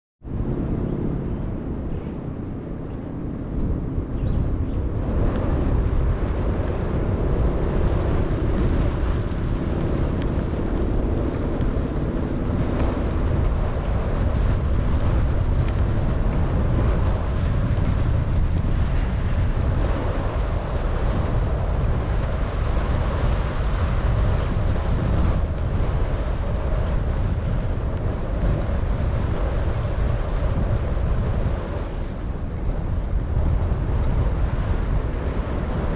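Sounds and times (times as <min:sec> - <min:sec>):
wind buffeting microphone: 0:00.2 - 0:35.9.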